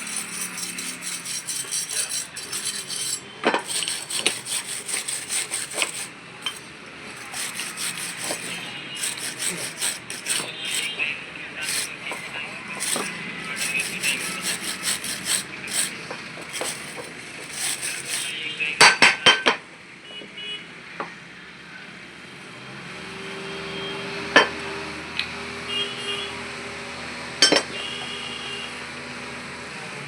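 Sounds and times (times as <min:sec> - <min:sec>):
metal tools clinking: 0:00.0 - 0:10.9.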